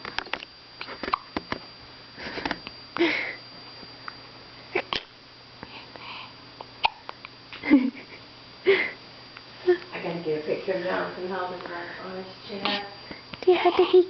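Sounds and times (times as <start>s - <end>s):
person hiccuping: 0.9s - 1.4s, 4.7s - 5.2s, 6.8s - 7.1s.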